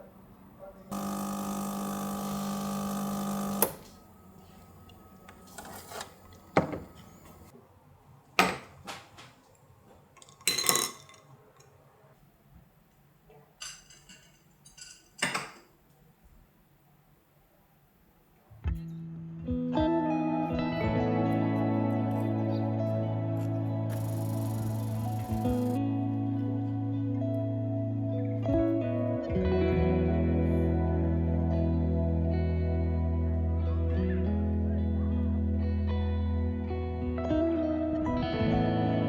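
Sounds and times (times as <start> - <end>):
microwave oven humming: 0.9 - 7.5, 23.9 - 25.8
dishes and utensils clinking: 10.1 - 11.8, 13.3 - 15.8.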